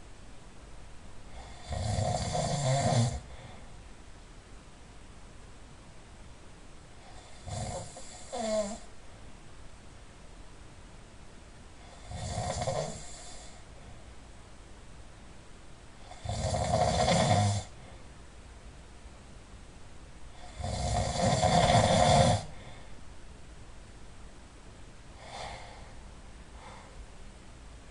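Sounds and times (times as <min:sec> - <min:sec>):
person snoring loudly: 0:01.3 - 0:03.4, 0:07.1 - 0:08.9, 0:11.8 - 0:13.6, 0:16.0 - 0:17.8, 0:20.4 - 0:22.6.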